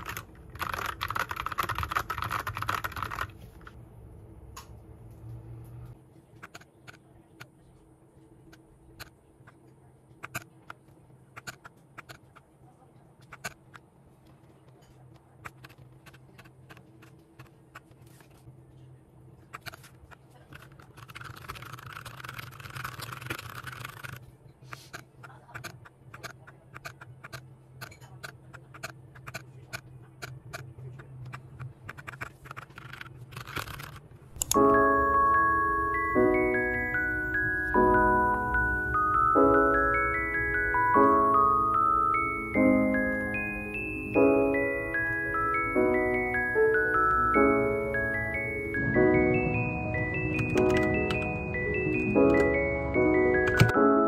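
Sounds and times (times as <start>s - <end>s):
keyboard keys clicking: 0.0s - 3.8s, 20.6s - 24.2s, 31.3s - 49.0s, 49.8s - 54.0s.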